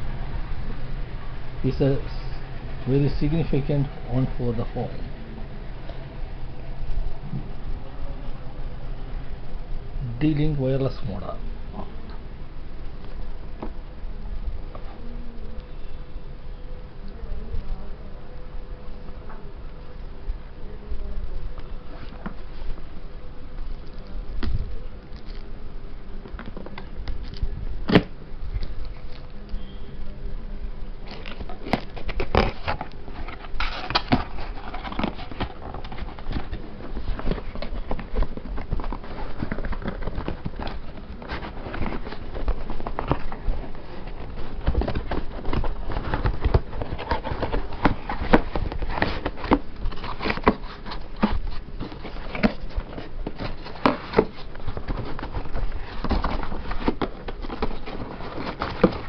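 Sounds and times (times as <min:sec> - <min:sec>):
packaging rustling and crinkling: 0:21.5 - 0:25.5, 0:31.0 - 0:59.0.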